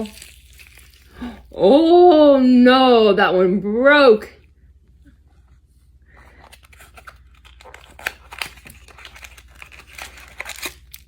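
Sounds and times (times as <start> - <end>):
packaging crinkling and tearing: 0.0 - 1.4, 6.3 - 11.0.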